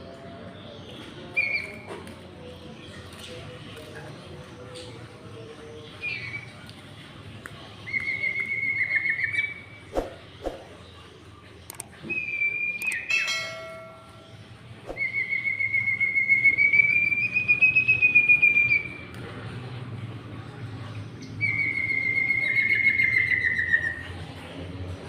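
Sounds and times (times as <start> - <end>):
songbirds trilling whistles: 0.6 - 1.9, 5.9 - 6.6, 7.8 - 10.2, 12.0 - 13.3, 14.9 - 19.1, 21.3 - 24.2.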